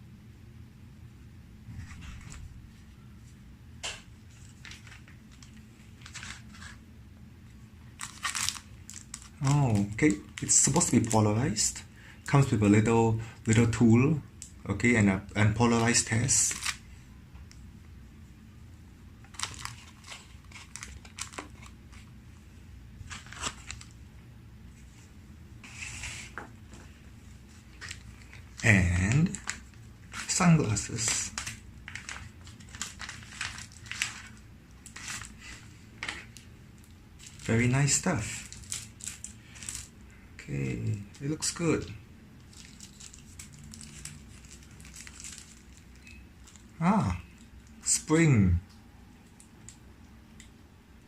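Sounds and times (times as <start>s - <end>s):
packaging rustling: 4.3s - 6.8s, 8.0s - 11.6s, 15.7s - 16.9s, 19.2s - 22.1s, 23.0s - 24.0s, 25.7s - 40.0s, 42.4s - 47.8s.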